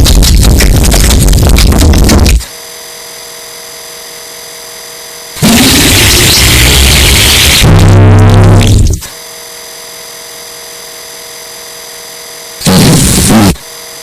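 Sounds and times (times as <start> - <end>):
buzzing hum with fixed tones: 0.0 - 14.0
distorted electronic blast: 5.4 - 9.1, 12.6 - 13.6.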